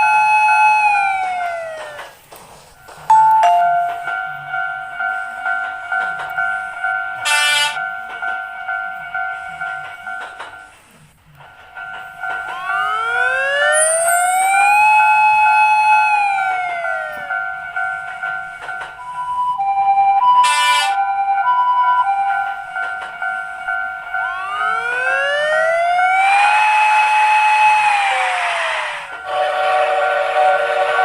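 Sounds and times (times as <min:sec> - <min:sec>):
level crossing alarm ringing: 0:03.1 - 0:05.4, 0:06.4 - 0:08.1, 0:12.2 - 0:27.6
siren-like tone: 0:12.5 - 0:17.3, 0:24.2 - 0:28.2.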